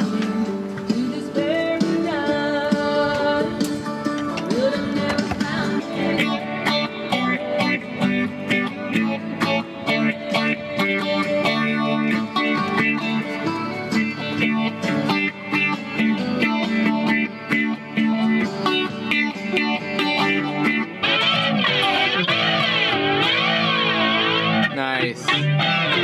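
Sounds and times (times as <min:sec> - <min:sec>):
electric guitar through small amp: 0:00.0 - 0:26.0.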